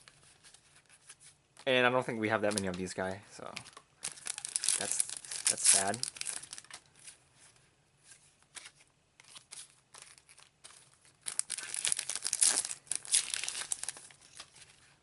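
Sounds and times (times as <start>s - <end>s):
wrappers crinkling and tearing: 3.6s - 6.9s, 9.2s - 14.9s.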